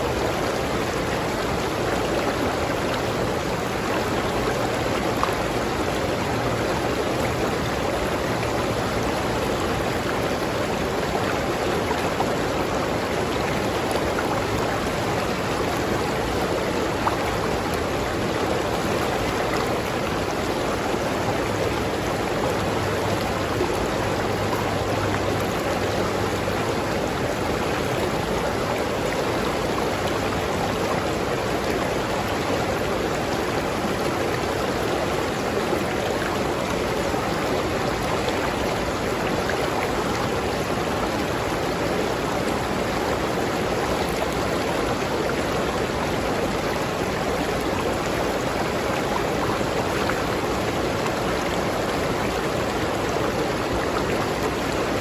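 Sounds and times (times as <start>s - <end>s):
river flowing over rocks: 0.0s - 55.0s.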